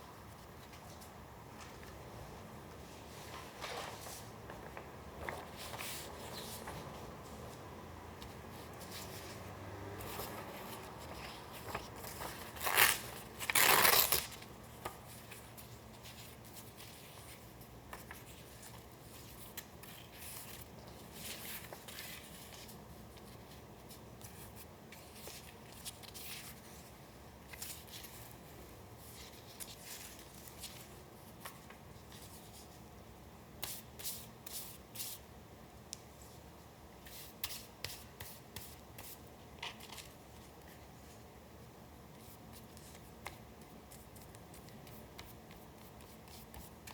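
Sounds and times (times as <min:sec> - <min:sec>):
paper tearing: 0:12.5 - 0:14.4.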